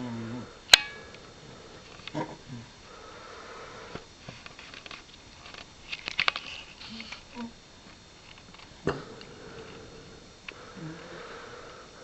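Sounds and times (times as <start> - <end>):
person snoring: 0.0 - 0.6, 8.9 - 12.0.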